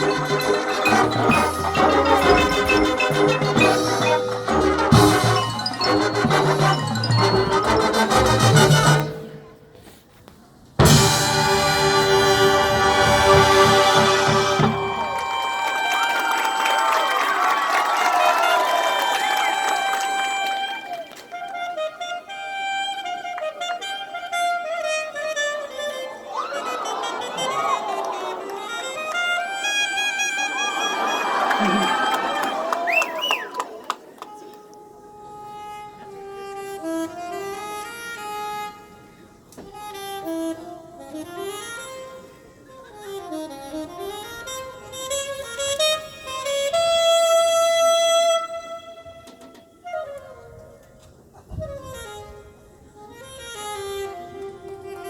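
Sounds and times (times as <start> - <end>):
band playing slow melody: 0.0 - 9.5, 10.8 - 16.4
school band playing: 0.0 - 9.5, 10.8 - 33.7, 48.4 - 49.8.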